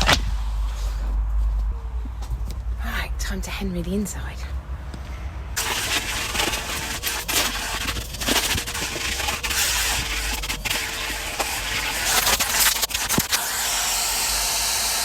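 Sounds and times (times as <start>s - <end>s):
vacuum nozzle scraping and sucking: 5.6s - 15.0s
vacuum cleaner motor whine: 8.4s - 15.0s.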